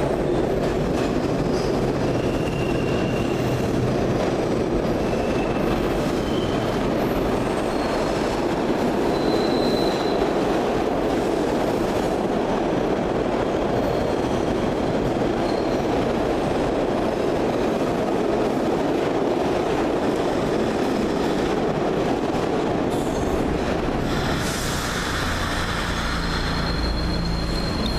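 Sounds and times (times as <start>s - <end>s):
train wheels rumbling on rails: 0.0s - 27.9s
high-pitched wheel squeals: 9.1s - 10.2s, 26.1s - 27.9s.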